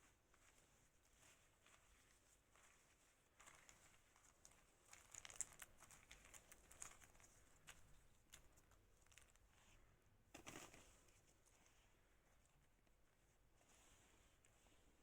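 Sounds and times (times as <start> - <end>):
soft rustling: 0.0 - 15.0.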